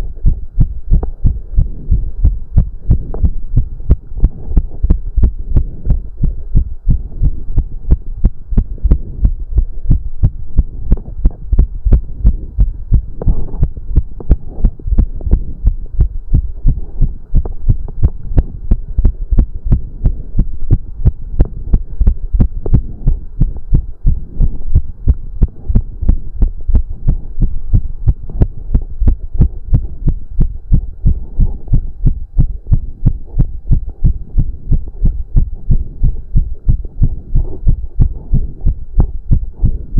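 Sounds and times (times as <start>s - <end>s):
fast heartbeat thumps: 0.0s - 39.9s.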